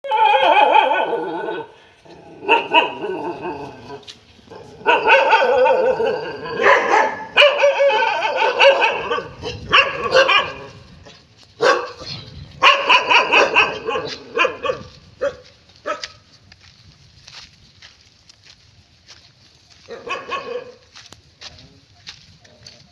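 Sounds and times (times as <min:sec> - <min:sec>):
dogs barking and yipping: 0:00.0 - 0:16.3, 0:19.7 - 0:21.0.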